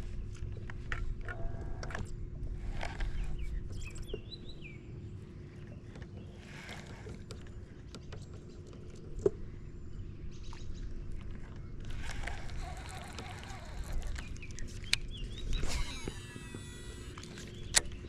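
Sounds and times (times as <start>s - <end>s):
faint steady hum: 0.0s - 18.0s
wind rumble on microphone: 8.4s - 18.0s.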